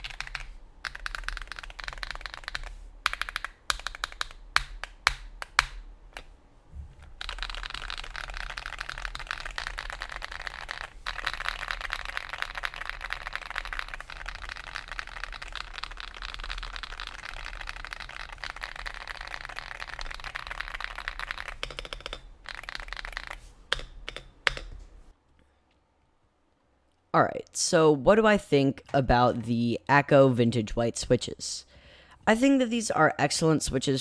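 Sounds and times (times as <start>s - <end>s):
mechanical keyboard typing: 0.0s - 6.3s, 7.0s - 25.1s.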